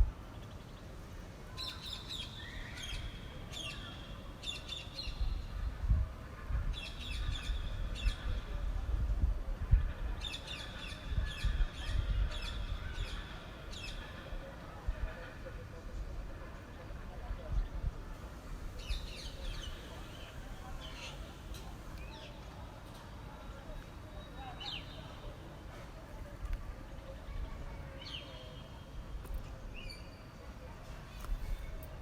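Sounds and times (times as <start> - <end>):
wind buffeting microphone: 5.0 - 19.8.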